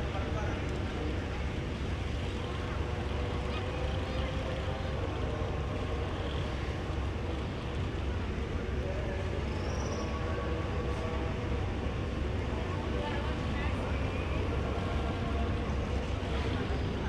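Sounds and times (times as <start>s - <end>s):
faint voices: 0.0s - 17.0s
ship engines droning: 0.0s - 17.0s.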